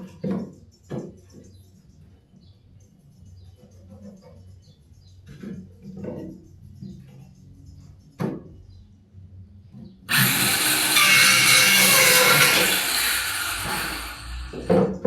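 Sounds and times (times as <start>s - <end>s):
power tool working wood: 10.1s - 15.0s.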